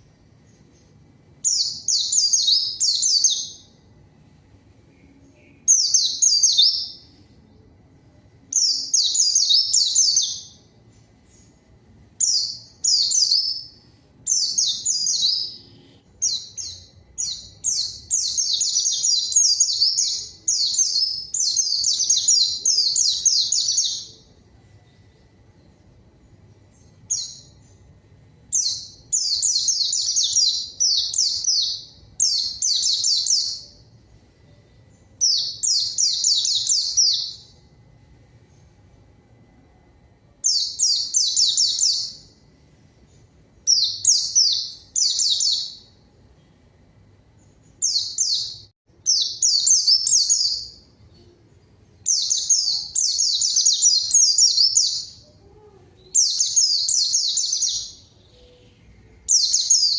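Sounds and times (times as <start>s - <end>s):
white-eye twittering song: 0.0s - 3.8s, 4.8s - 7.6s, 8.4s - 25.2s, 28.5s - 33.8s, 34.7s - 37.6s, 47.6s - 51.4s, 52.0s - 55.2s, 56.1s - 59.9s.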